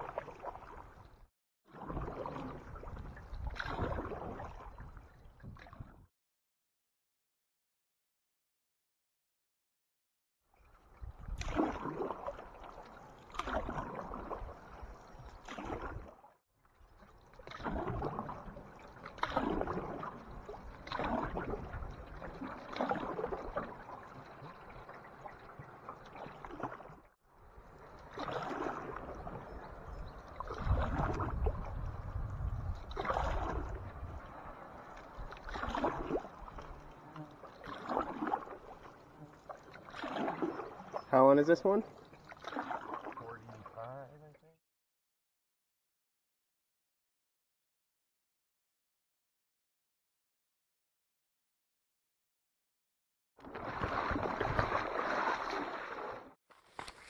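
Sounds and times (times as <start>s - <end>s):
paddles splashing through water: 0.0s - 5.9s, 10.8s - 44.2s, 53.4s - 57.0s.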